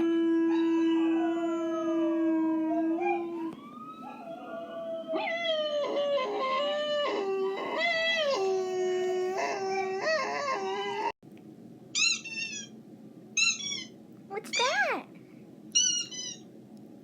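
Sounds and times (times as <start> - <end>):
dog howling: 0.0 - 11.2
dog whining: 2.7 - 11.2, 12.0 - 12.8, 13.4 - 14.0.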